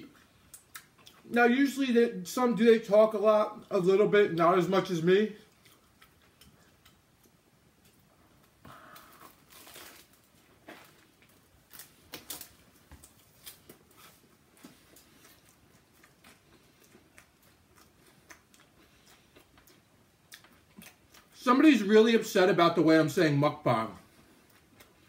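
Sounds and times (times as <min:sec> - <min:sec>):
person chewing: 0:00.0 - 0:01.4, 0:05.4 - 0:21.4, 0:24.2 - 0:25.0.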